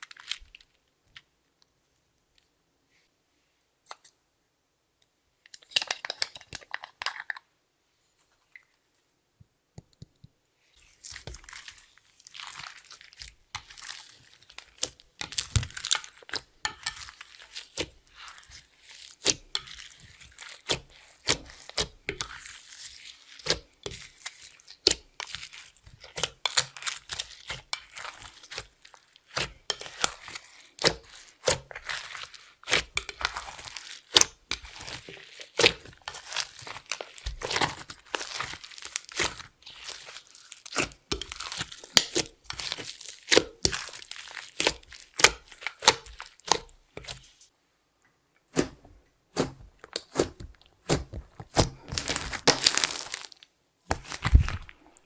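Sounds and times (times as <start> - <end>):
slime kneaded by hand crackling: 10.8 - 47.4, 48.5 - 55.0.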